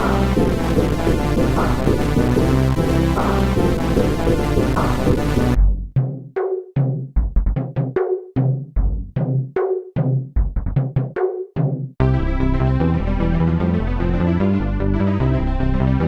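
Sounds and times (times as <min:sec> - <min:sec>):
dense music track: 0:00.0 - 0:06.2, 0:12.0 - 0:16.0.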